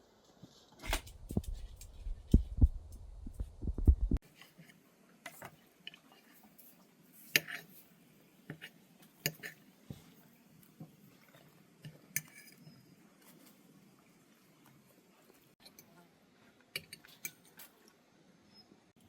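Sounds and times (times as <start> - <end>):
cutlery and dishes clinking: 12.1 - 12.8.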